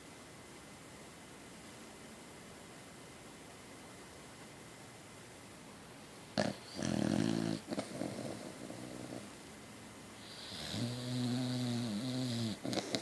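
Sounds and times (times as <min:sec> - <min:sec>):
dog snoring: 0:06.4 - 0:09.3, 0:10.2 - 0:13.0.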